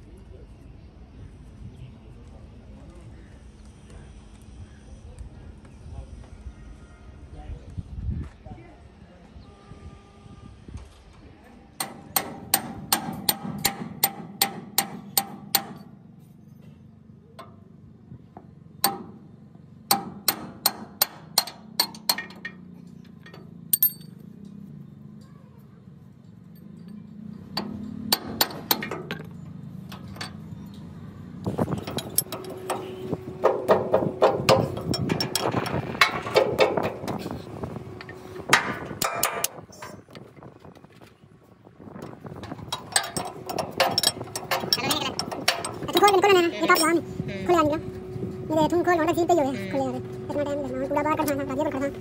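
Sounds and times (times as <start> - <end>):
hammer striking metal: 11.8 - 15.9, 27.5 - 29.3, 31.8 - 37.2, 38.0 - 39.9
low steady hum: 15.4 - 52.0.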